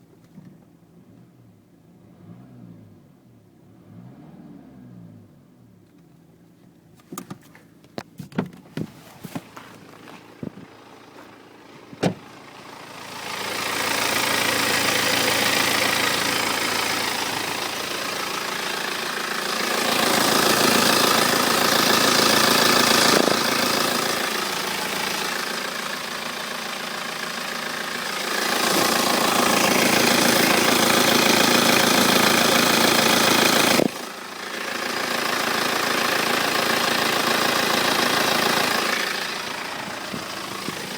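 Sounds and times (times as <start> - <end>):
diesel engine running and revving: 1.1 - 5.9, 9.4 - 40.9
engine fluttering noise: 9.0 - 40.9.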